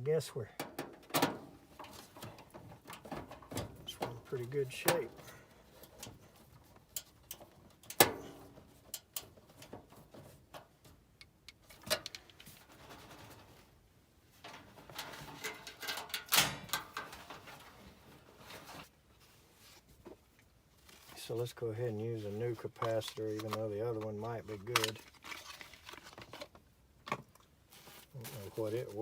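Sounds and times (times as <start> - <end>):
tools clicking and rattling: 6.8 - 13.4, 14.4 - 17.6.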